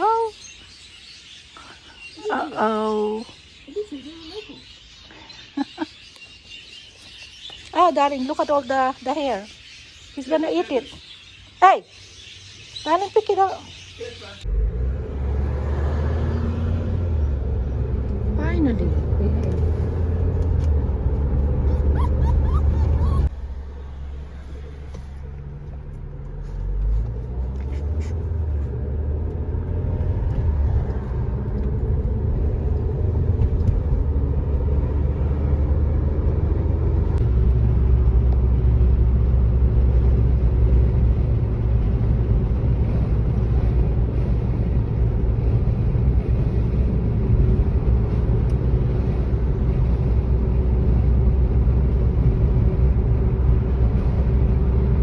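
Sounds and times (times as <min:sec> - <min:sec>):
car engine and road noise: 0:13.4 - 0:55.0.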